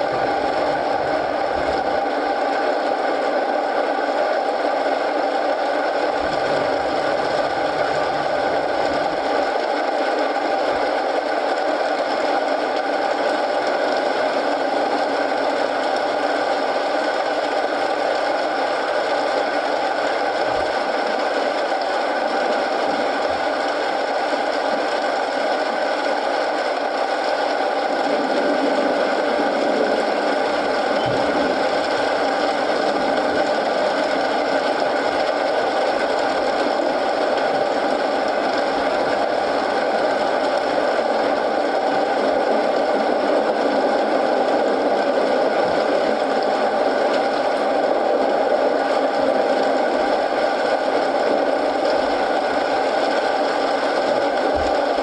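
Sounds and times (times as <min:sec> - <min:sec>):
steady rain: 0:00.0 - 0:55.0.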